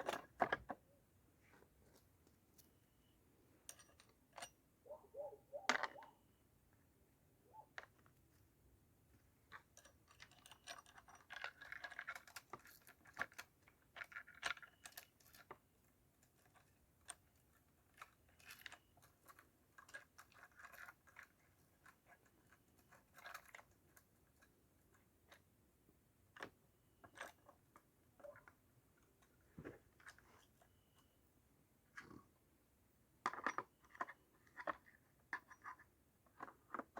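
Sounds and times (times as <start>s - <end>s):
small metal parts and tools clicking: 3.6s - 4.6s, 9.4s - 25.6s, 26.2s - 31.2s, 33.2s - 36.9s.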